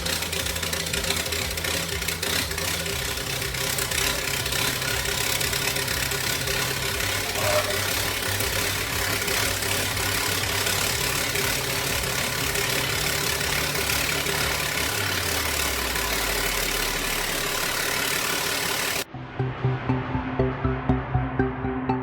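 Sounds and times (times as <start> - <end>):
engine running: 0.0 - 22.0
low hum sliding down: 19.1 - 22.0.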